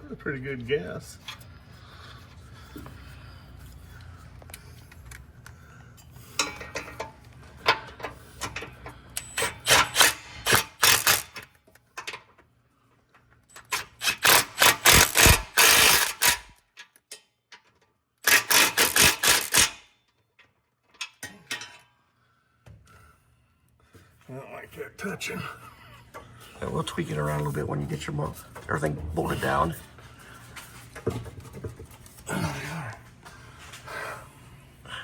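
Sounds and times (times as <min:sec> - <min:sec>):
hand ratchet clicking: 0:09.2 - 0:11.5, 0:13.6 - 0:16.6, 0:18.2 - 0:19.8.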